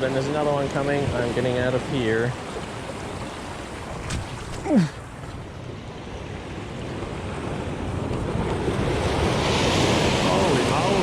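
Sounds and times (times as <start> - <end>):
ocean wave surging over rocks: 6.7 - 11.0.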